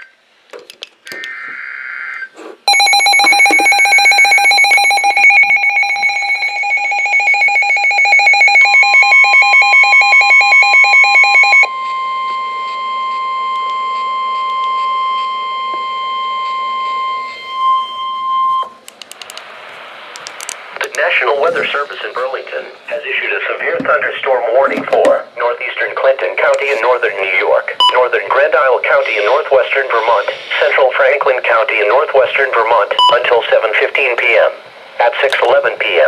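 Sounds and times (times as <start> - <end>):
pulsing electronic alert beeping: 2.7 - 18.7
steady alarm tone: 2.7 - 18.9, 26.7 - 33.4.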